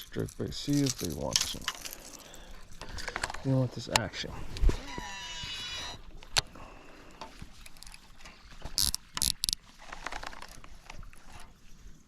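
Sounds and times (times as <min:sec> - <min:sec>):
reel cranking: 0:04.6 - 0:06.5, 0:08.7 - 0:11.0
fishing reel spool whining: 0:04.7 - 0:06.2
reel engaging click: 0:08.8 - 0:10.6.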